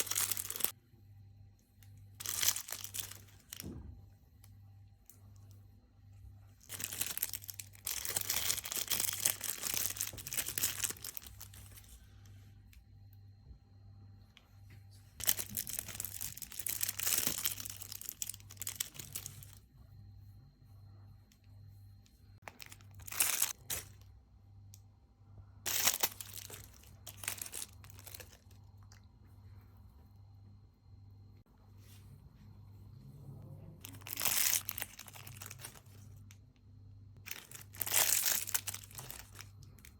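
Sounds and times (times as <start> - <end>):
plastic packaging crinkling: 0.0 - 0.8, 2.2 - 3.7, 6.6 - 12.0, 15.2 - 19.6, 22.4 - 24.2, 25.7 - 29.0, 33.8 - 36.4, 37.2 - 39.9.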